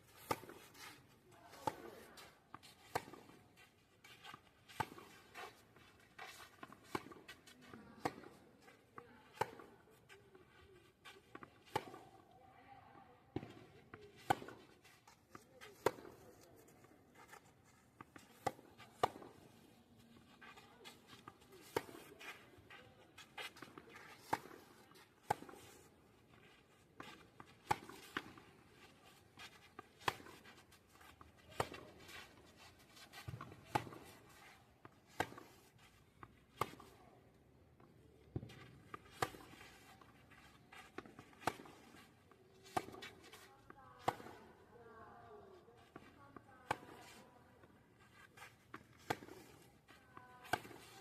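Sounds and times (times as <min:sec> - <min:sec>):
tennis ball struck with racket: 0:33.2 - 0:34.4, 0:38.3 - 0:44.5, 0:48.7 - 0:49.7, 0:50.4 - 0:51.0.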